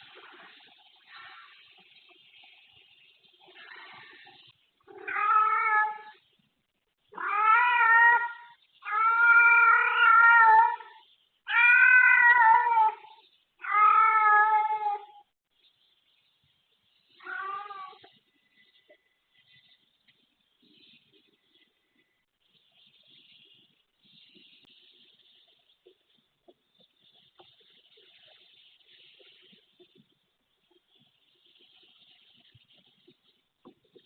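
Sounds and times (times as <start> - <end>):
cat yowling: 4.9 - 6.2, 7.2 - 15.2.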